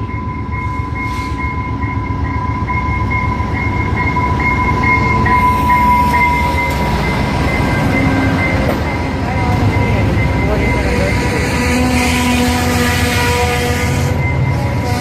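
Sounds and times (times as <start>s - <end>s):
locomotive bell ringing: 0.0s - 15.0s
passenger train rumbling past: 0.0s - 15.0s.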